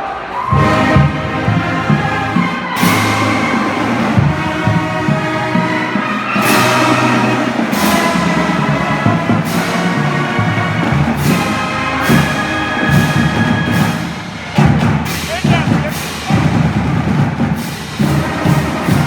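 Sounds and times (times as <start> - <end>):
heavy drum hits: 6.4 - 19.0.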